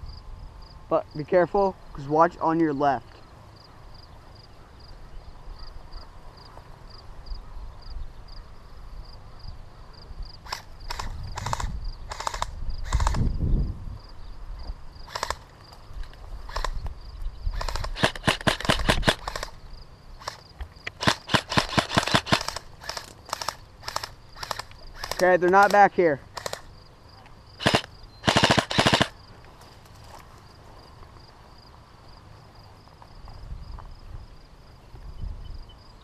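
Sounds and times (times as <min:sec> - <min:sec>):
airsoft gun firing bursts: 0:10.5 - 0:13.2, 0:17.6 - 0:19.6, 0:20.2 - 0:25.8, 0:26.4 - 0:26.7, 0:27.6 - 0:29.2
sharp clicks: 0:10.5 - 0:13.2, 0:15.1 - 0:17.0, 0:17.6 - 0:19.6, 0:20.2 - 0:29.2.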